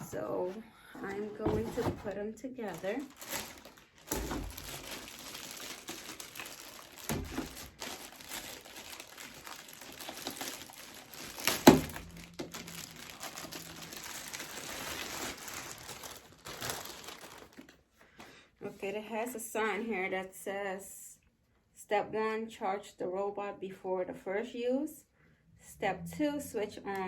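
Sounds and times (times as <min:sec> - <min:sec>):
packaging crinkling and rustling: 0:00.0 - 0:18.3.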